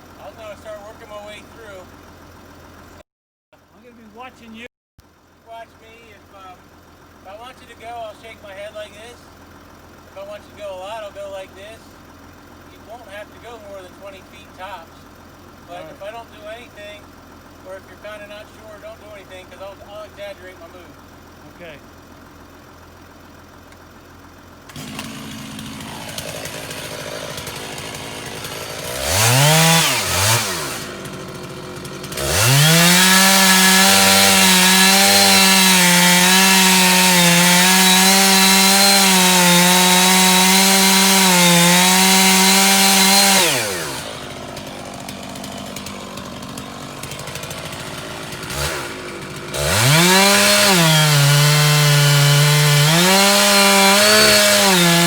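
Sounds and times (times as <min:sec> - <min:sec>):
chainsaw idling and revving: 0:00.0 - 0:03.0, 0:05.0 - 0:55.0
chainsaw cutting wood: 0:24.6 - 0:55.0.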